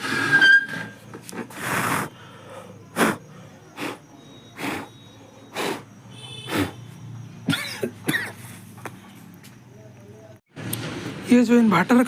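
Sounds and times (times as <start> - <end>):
sharp puffs of breath: 1.5 - 6.8.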